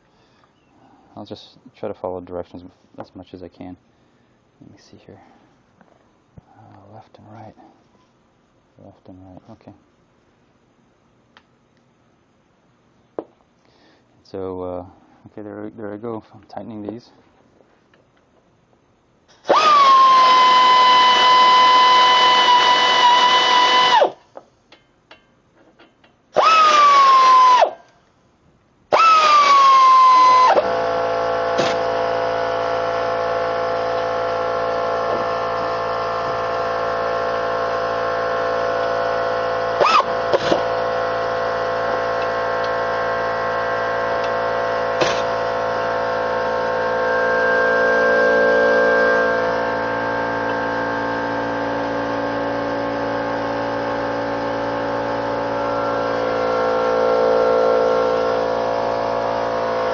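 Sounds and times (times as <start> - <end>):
steady mechanical hum: 0.0 - 59.9
power tool whining: 19.3 - 24.2, 26.3 - 27.9, 28.9 - 59.9.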